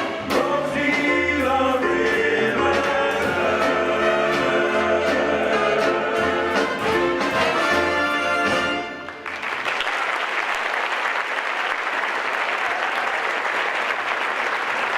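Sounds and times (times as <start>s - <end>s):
instrumental music: 0.0s - 9.2s
audience applause: 8.9s - 14.9s.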